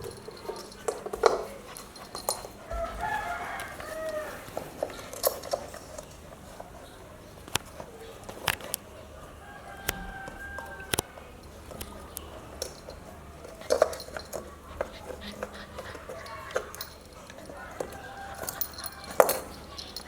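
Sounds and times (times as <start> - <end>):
rooster crowing: 2.7 - 4.7, 9.2 - 11.3, 17.4 - 19.6.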